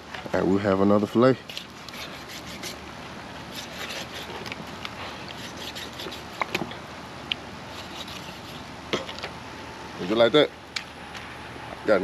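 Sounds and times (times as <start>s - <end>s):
knife scraping fish: 1.4s - 2.8s, 3.5s - 6.6s, 7.7s - 8.7s.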